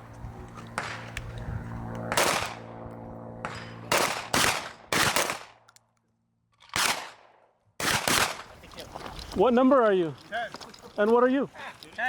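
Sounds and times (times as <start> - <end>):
steady low hum: 0.0 - 12.0
gunshots: 0.8 - 1.1, 2.1 - 2.7, 3.4 - 5.6, 6.6 - 8.5.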